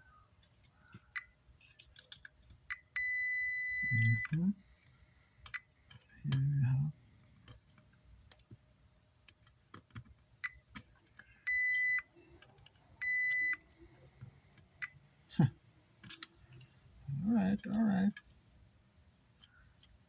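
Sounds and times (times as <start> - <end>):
multimeter continuity beep: 2.7 - 4.6, 10.4 - 10.6, 11.4 - 12.4, 13.0 - 13.9, 14.8 - 15.0.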